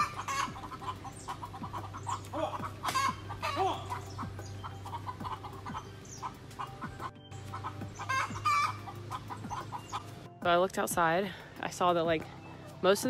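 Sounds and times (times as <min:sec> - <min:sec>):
chickens clucking: 0:00.0 - 0:10.3.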